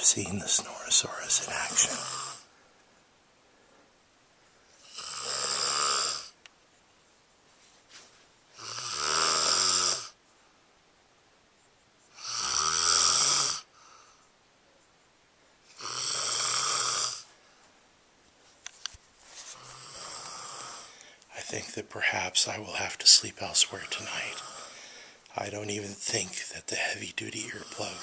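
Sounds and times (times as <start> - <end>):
person snoring loudly: 0.0 - 2.5, 4.8 - 6.4, 8.6 - 10.2, 12.2 - 13.7, 15.8 - 17.2, 19.6 - 20.9, 23.9 - 24.8.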